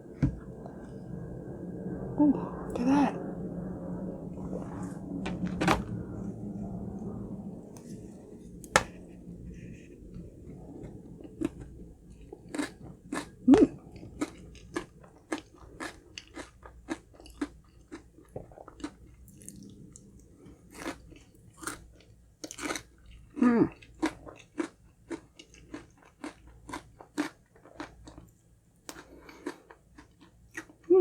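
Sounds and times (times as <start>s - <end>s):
crunchy chewing: 8.7s - 30.9s.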